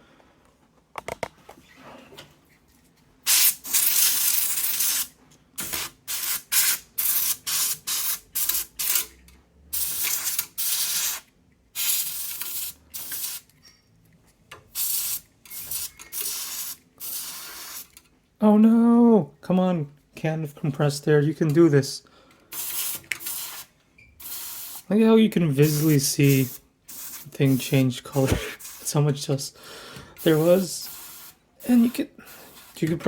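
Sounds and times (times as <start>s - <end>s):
compressed air can spraying: 3.3s - 9.1s, 9.8s - 13.4s, 14.8s - 17.9s, 22.5s - 24.9s, 25.6s - 28.9s, 30.2s - 32.9s.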